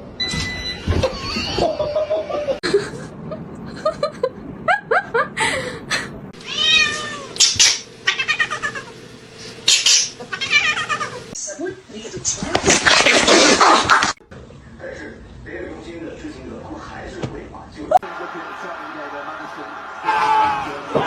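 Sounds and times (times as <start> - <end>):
cats meowing: 6.4 - 8.9, 10.3 - 11.3.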